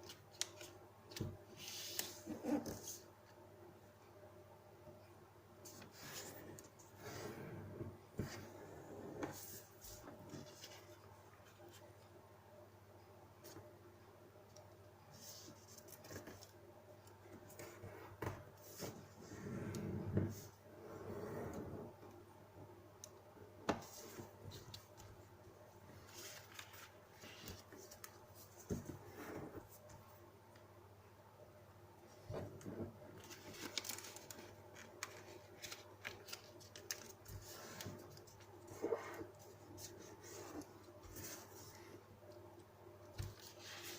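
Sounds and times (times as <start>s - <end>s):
paper rustling and crinkling: 25.9s - 29.8s, 32.4s - 41.9s.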